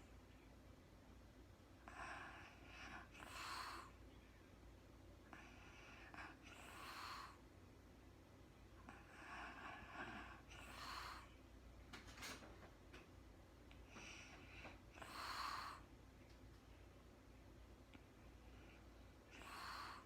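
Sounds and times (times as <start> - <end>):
woman snoring softly: 1.8 - 4.0, 5.6 - 7.4, 8.9 - 11.3, 15.0 - 15.9, 19.3 - 20.0.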